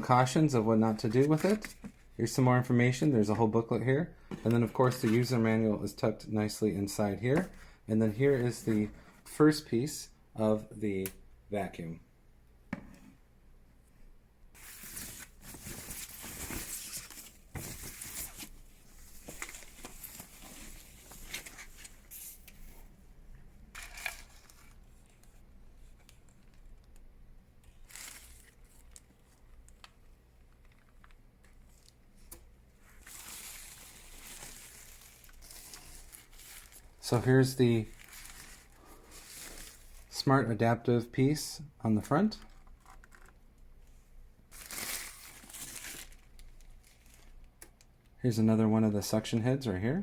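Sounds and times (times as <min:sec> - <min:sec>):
packaging rustling and tearing: 0:14.6 - 0:22.5, 0:23.8 - 0:25.3, 0:27.7 - 0:29.9, 0:32.9 - 0:37.0, 0:37.8 - 0:40.1, 0:44.5 - 0:47.4.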